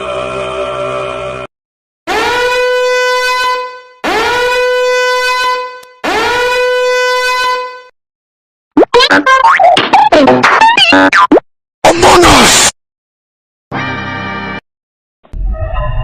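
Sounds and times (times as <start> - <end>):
horn blasts: 2.1 - 8.0.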